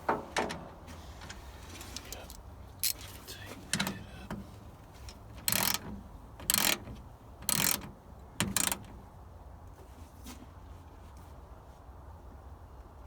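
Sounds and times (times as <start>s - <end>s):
ratchet wrench clicking: 2.8s - 3.0s, 5.0s - 9.0s.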